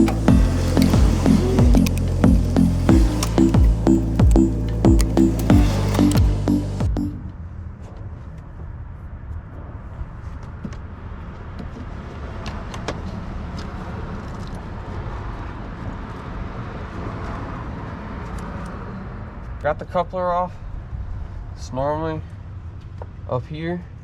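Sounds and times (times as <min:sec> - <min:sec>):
hand tools clicking and tapping: 0:00.0 - 0:07.0.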